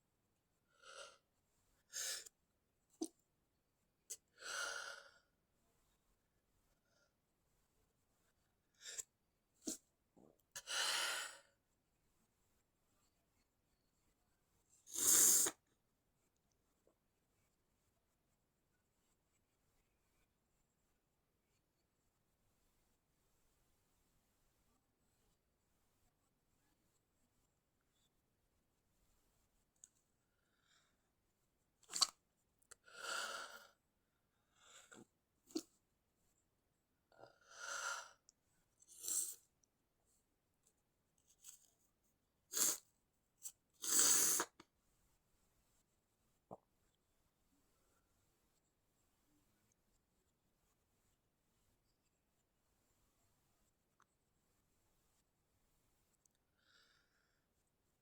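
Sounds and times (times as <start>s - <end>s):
person breathing: 56.5s - 57.5s.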